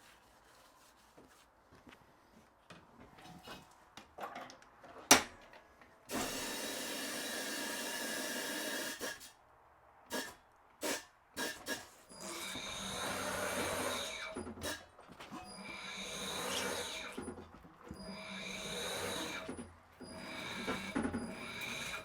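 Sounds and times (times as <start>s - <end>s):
tire machine rubbing and clicks: 13.6s - 22.0s.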